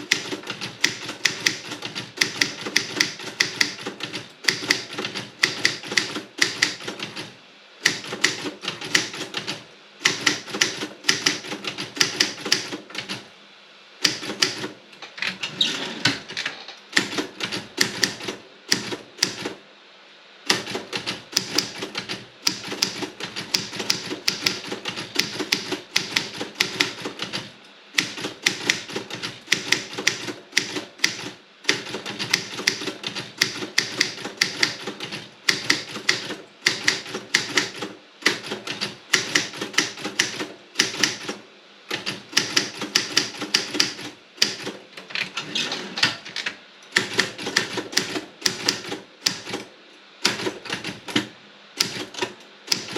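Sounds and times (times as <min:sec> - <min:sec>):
typewriter keystrokes: 0:00.0 - 0:13.2, 0:14.0 - 0:15.4, 0:16.9 - 0:19.6, 0:20.5 - 0:45.3, 0:46.9 - 0:52.9.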